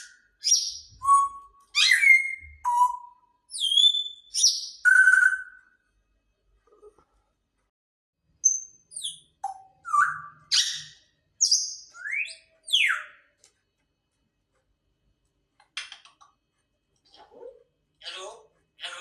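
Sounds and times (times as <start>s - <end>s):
parrot whistling and squawking: 0.0s - 5.6s, 8.6s - 13.2s.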